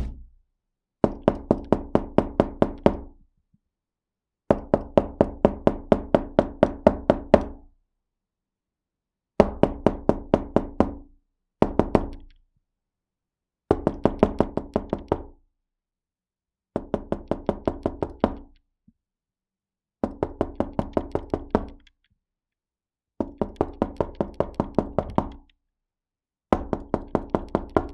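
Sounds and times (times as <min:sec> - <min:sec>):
knuckles knocking on wooden door: 0:16.8 - 0:18.4, 0:20.0 - 0:21.7, 0:23.2 - 0:25.3, 0:26.6 - 0:27.9.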